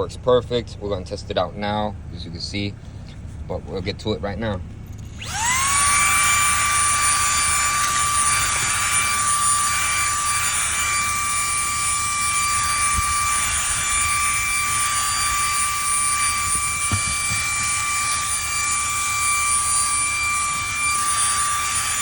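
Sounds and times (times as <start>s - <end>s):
handheld vacuum running: 5.1s - 22.0s.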